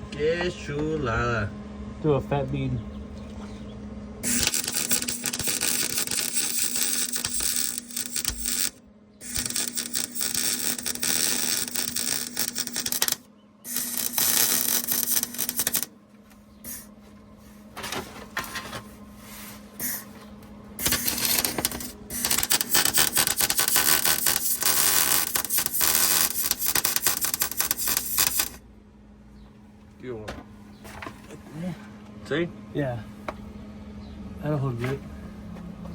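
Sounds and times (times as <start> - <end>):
welder crackling: 4.2 - 15.9, 16.7 - 16.9, 19.8 - 20.2, 20.8 - 28.6.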